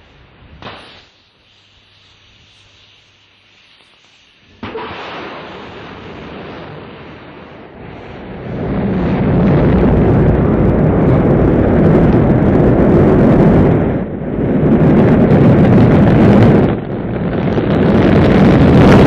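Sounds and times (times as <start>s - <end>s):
rocket engine roar: 4.4s - 19.0s.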